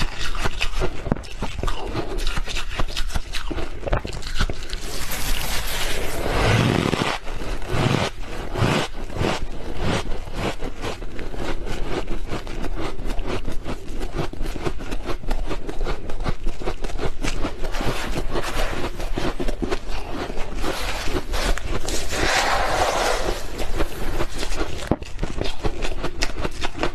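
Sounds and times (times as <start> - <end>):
frost crunching: 3.3 - 10.5, 17.0 - 26.9.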